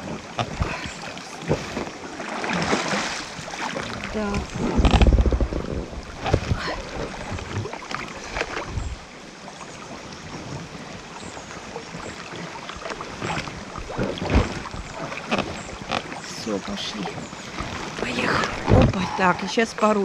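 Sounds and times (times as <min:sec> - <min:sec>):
paddles knocking on hull: 0:00.0 - 0:08.8, 0:12.8 - 0:19.4
water splashing and rushing: 0:00.0 - 0:20.0.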